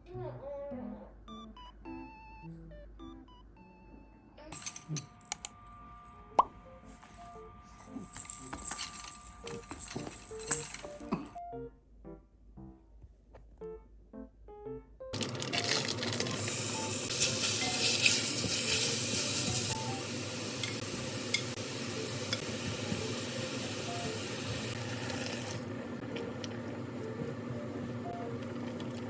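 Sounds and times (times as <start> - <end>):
soft background music: 0.0 - 29.0
utensils clinking: 4.6 - 5.5, 7.0 - 11.4, 15.2 - 20.0, 20.6 - 26.6
kitchen sizzling hiss: 15.8 - 28.3.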